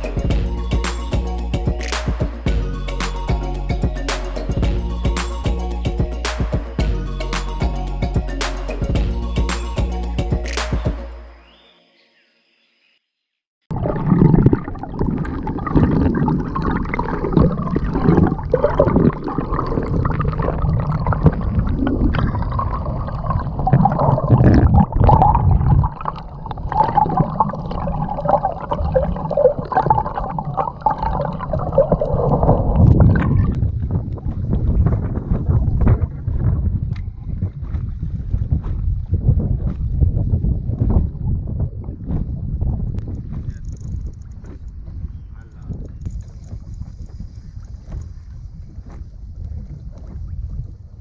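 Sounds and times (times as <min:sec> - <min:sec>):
paddle splashes and gurgling: 0:13.7 - 0:45.4, 0:46.1 - 0:51.0
wind rumble on microphone: 0:13.7 - 0:51.0.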